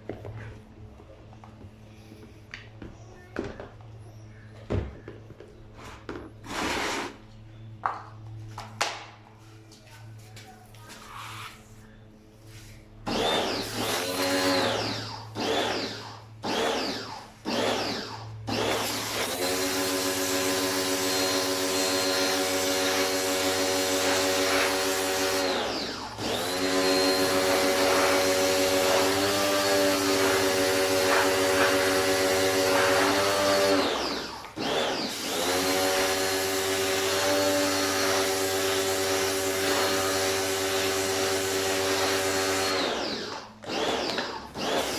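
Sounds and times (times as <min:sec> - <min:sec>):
pressure washer motor whining: 0:13.0 - 0:44.9.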